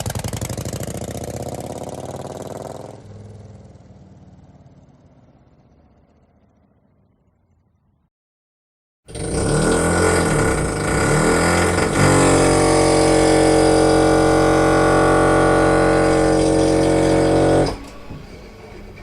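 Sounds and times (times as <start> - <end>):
motorcycle engine revving: 0.0 - 6.9, 9.1 - 18.3.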